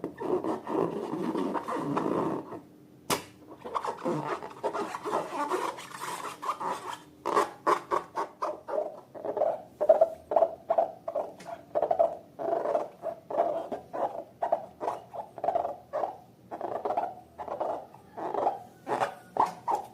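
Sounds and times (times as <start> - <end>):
sharp click: 3.1 - 3.4
slime rubbing: 3.6 - 19.9.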